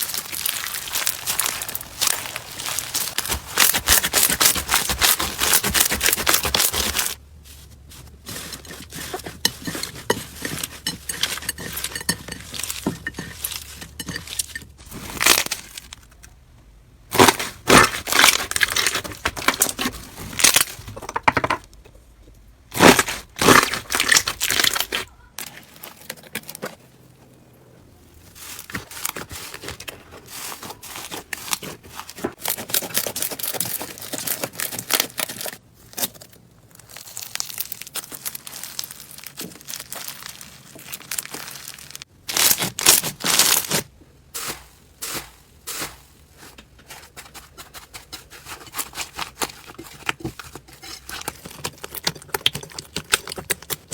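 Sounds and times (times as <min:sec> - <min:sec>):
crunchy slime crackling and popping: 0:00.0 - 0:07.2, 0:10.4 - 0:16.4, 0:17.1 - 0:20.8, 0:22.7 - 0:27.2, 0:28.0 - 0:46.0.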